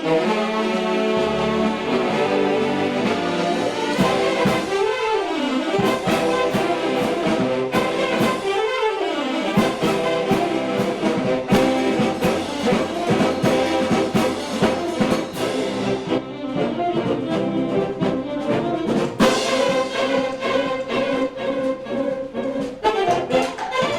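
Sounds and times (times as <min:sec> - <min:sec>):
drums: 0:00.0 - 0:08.7, 0:09.5 - 0:23.9
accordions: 0:00.0 - 0:23.9
saxophones: 0:00.0 - 0:23.9
string band music: 0:00.0 - 0:23.9
banjos: 0:09.5 - 0:23.9.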